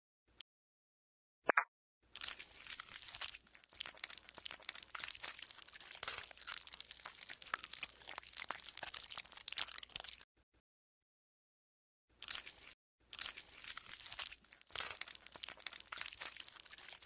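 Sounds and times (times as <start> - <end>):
slime squelching and crackling: 2.2 - 10.2, 12.2 - 17.0.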